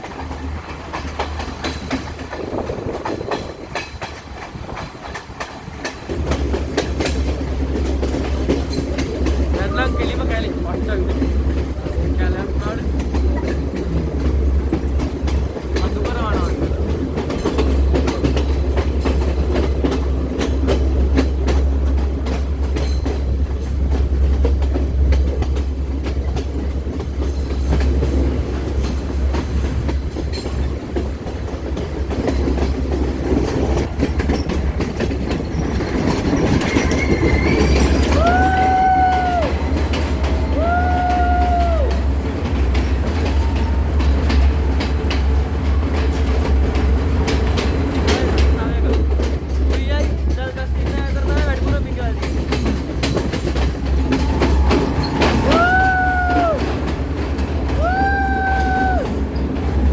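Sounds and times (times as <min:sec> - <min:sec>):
train rumbling on rails: 0:00.0 - 0:59.9
wheels clacking over rail joints: 0:00.0 - 0:59.9
train horn blasts: 0:54.0 - 0:55.5.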